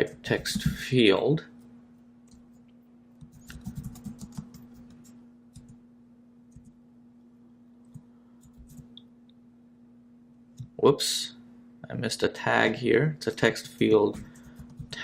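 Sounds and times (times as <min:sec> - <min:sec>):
faint electrical hum: 0:00.0 - 0:15.0
computer keyboard typing: 0:03.3 - 0:05.7.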